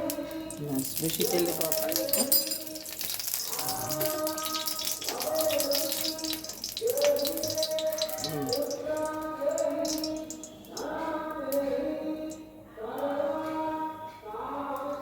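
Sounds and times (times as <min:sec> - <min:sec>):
oil sizzling in a frying pan: 0:00.0 - 0:11.0
song with singing: 0:00.0 - 0:15.0.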